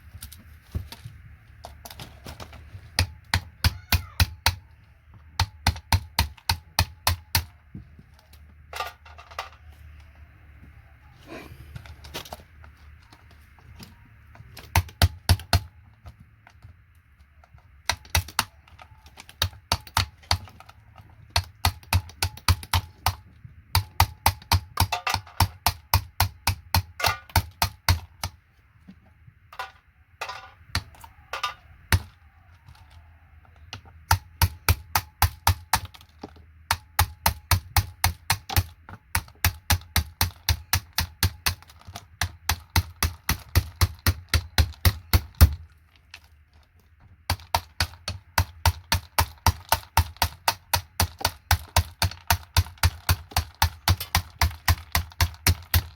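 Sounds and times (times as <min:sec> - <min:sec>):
sharp plastic clicks: 0:14.4 - 0:28.4, 0:47.2 - 0:55.9.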